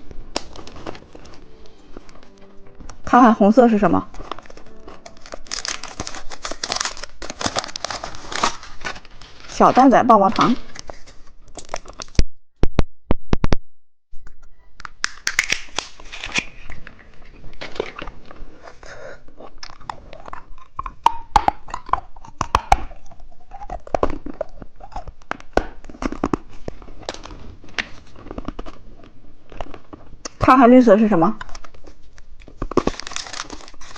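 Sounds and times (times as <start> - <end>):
plastic packaging crinkling: 0.0 - 2.4, 4.0 - 12.2, 23.7 - 30.1, 31.4 - 33.9
crunchy chewing: 18.6 - 27.2, 27.9 - 30.4.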